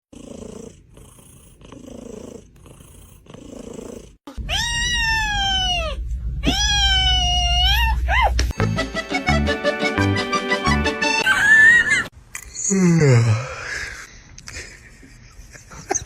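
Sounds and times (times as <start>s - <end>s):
cat purring: 0.1s - 4.2s
cat meowing loudly: 4.4s - 8.2s
music: 8.5s - 11.3s.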